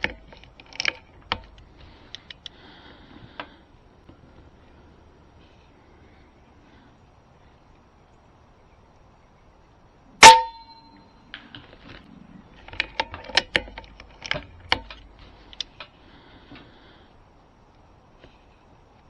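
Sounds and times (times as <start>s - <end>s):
sharp clicks and knocks: 0.0s - 2.6s, 10.2s - 16.7s
short ringing tone: 10.2s - 11.3s.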